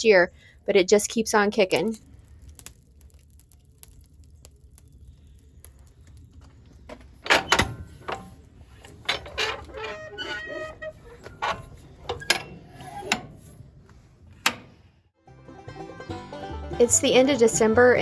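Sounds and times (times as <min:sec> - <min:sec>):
loud clunk: 0:07.2 - 0:10.1.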